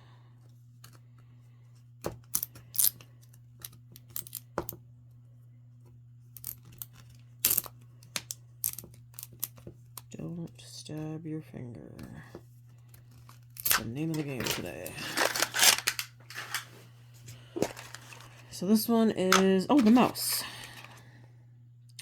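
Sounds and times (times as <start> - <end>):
steady low hum: 0.0 - 22.0
plastic capsule clicking and crinkling: 13.0 - 16.7.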